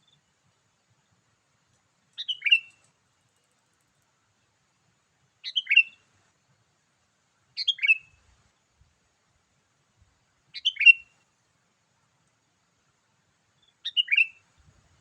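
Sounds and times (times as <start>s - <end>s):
bulbul song: 2.2s - 2.8s, 5.4s - 6.0s, 10.6s - 11.2s, 13.7s - 14.5s.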